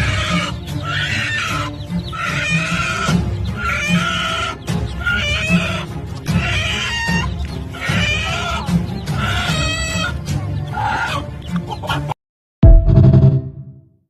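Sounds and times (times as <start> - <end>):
chicken clucking: 0.0 - 12.2
music with a steady beat: 12.6 - 13.7.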